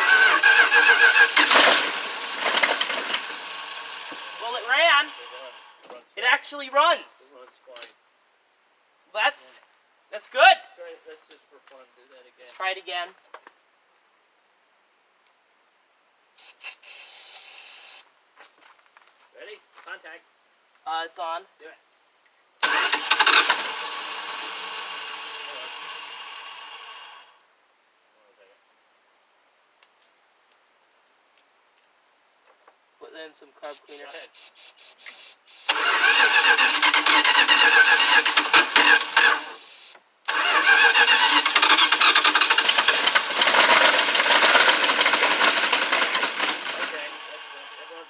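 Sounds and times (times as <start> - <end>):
engine cranking and catching: 0.0 - 5.6, 22.6 - 27.2, 35.0 - 47.5.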